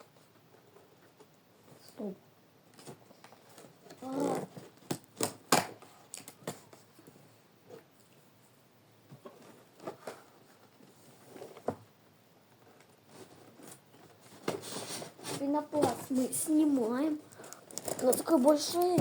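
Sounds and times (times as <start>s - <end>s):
taps and rustles: 13.2s - 16.2s, 17.4s - 19.0s.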